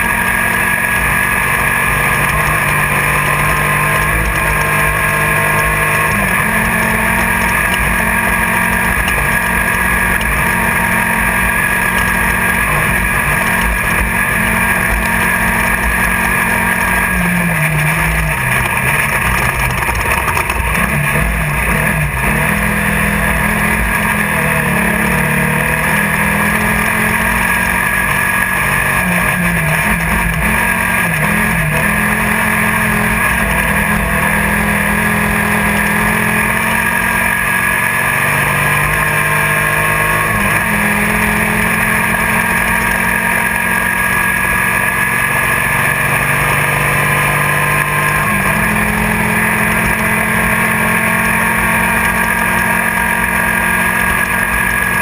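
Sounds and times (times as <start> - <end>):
race car engine running hard: 0.0 - 55.0.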